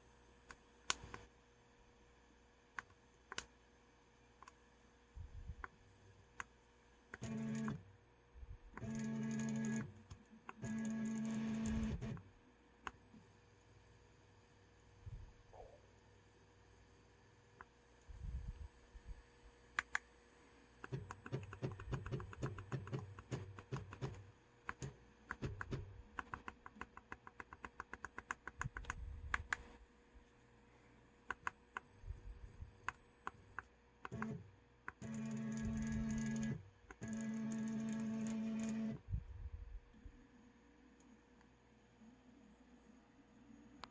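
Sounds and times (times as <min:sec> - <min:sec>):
motor steady pitched hum: 0:00.0 - 0:43.9
motors rapid clicking ticks: 0:20.8 - 0:29.6.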